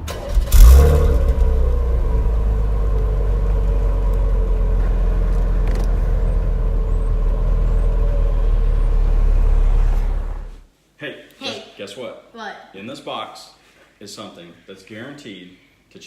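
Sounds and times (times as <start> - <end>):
car engine running: 0.0 - 10.7.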